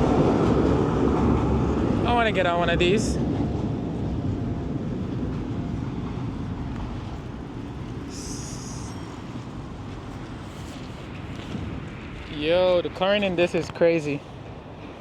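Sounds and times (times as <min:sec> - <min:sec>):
tram running on rails: 0:00.0 - 0:15.0.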